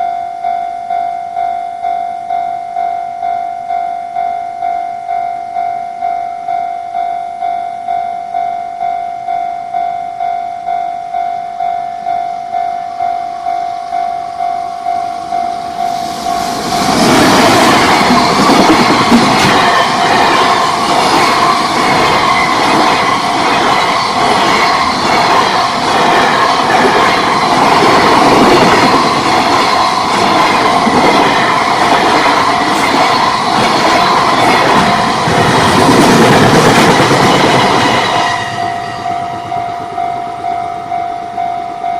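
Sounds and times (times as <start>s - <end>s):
freight train wheel and rail noise: 0.0s - 41.9s
level crossing warning bell: 0.0s - 41.9s.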